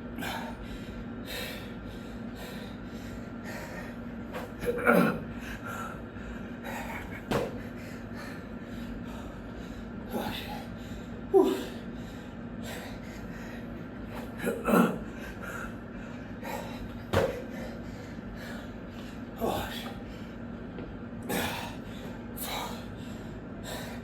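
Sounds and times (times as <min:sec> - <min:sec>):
man breathing hard: 0:00.0 - 0:04.6, 0:05.2 - 0:20.6, 0:21.2 - 0:24.0
man grunting: 0:04.5 - 0:05.9, 0:10.1 - 0:10.7, 0:11.3 - 0:11.9, 0:14.3 - 0:15.8, 0:19.4 - 0:20.1.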